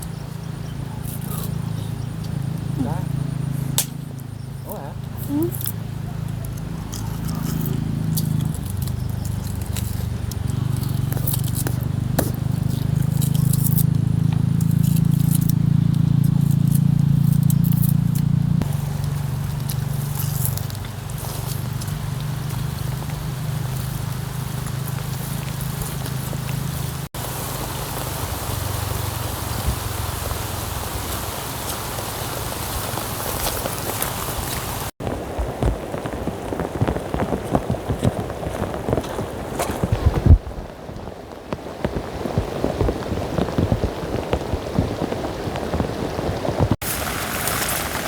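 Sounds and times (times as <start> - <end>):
low steady rumble: 0.0 - 31.0
rain falling with crackling: 0.0 - 48.0.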